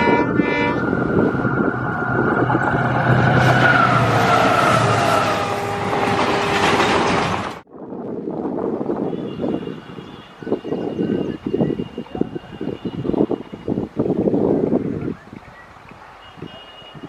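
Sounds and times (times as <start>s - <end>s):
whining tones sliding down: 0.0s - 6.7s
electric train passing at speed: 0.0s - 9.0s.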